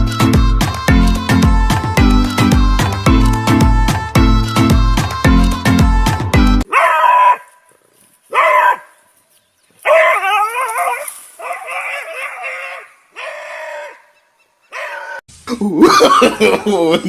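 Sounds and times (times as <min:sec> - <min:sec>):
dog howling: 0:09.9 - 0:14.0.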